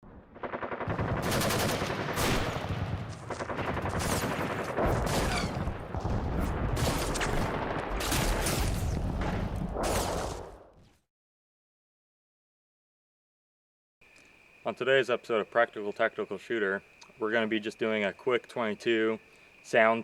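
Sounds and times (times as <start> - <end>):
rapid gunfire: 0.2 - 10.5.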